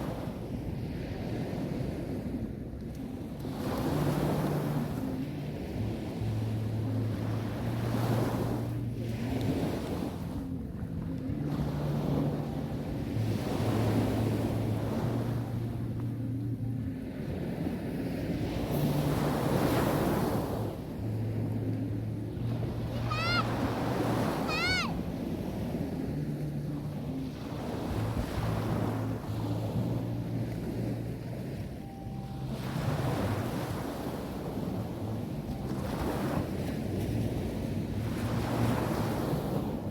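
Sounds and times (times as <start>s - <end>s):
waves breaking on beach: 0.0s - 16.0s, 17.0s - 39.9s
low steady hum: 4.2s - 33.8s.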